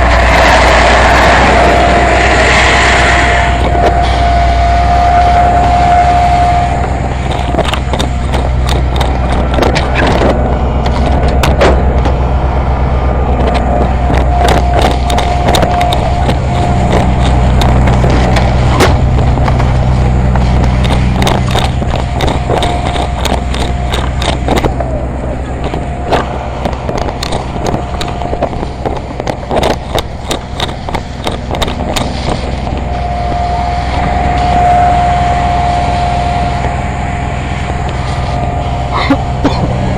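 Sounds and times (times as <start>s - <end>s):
heavy vehicle engine droning: 0.0s - 39.9s
steady whine: 0.0s - 39.9s
sharp knocks and rattles: 6.5s - 33.0s.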